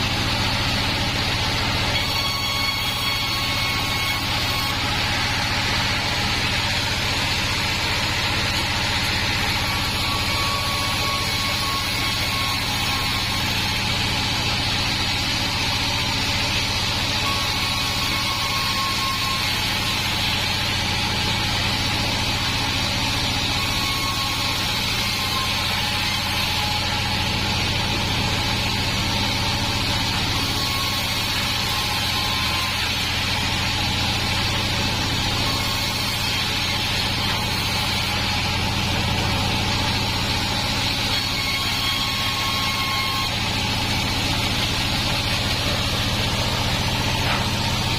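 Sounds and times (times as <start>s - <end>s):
bandsaw machine humming: 0.0s - 47.9s.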